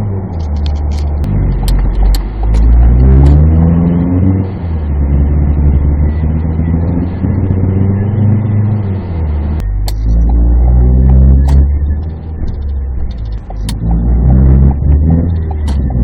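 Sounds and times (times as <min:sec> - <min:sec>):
car engine accelerating: 0:00.0 - 0:16.0
heavy low grinding rumble: 0:00.0 - 0:16.0
sharp clicks: 0:00.4 - 0:03.4, 0:09.6 - 0:14.1.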